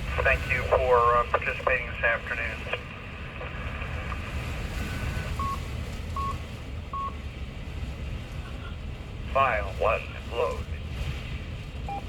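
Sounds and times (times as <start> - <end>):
low hum and hiss: 0.0 - 12.0
short electronic beeps: 4.8 - 5.6, 6.2 - 6.4.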